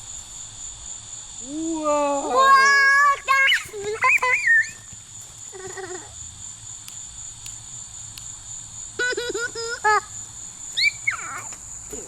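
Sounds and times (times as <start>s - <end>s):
crickets chirring: 0.0s - 12.0s
young child babbling: 11.1s - 12.0s.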